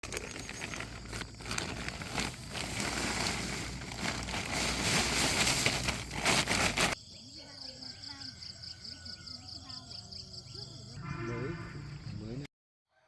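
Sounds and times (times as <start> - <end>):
rustling and crackling: 0.0 - 7.0.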